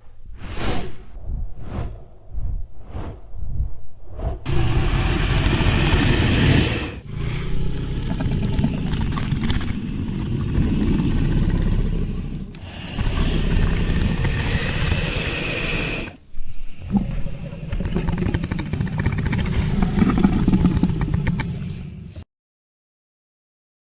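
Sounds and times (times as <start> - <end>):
dragon roar and growl: 4.4 - 16.2.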